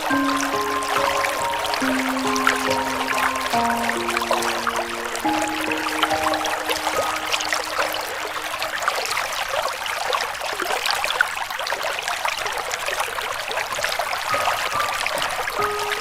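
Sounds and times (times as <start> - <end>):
faint sustained musical tone: 0.0 - 9.1
river water running: 0.0 - 16.0
small water splashes: 0.0 - 16.0.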